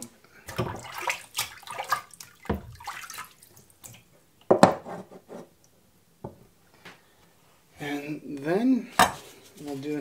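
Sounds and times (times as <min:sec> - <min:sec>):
water splashing and trickling: 0:00.5 - 0:04.1.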